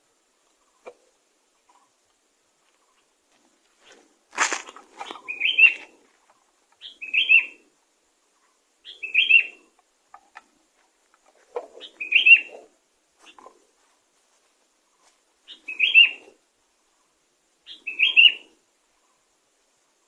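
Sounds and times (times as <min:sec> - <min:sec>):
soft rustle: 0:01.6 - 0:06.6, 0:09.7 - 0:15.6
bird chirping: 0:05.0 - 0:10.4, 0:11.3 - 0:13.5, 0:14.8 - 0:19.3.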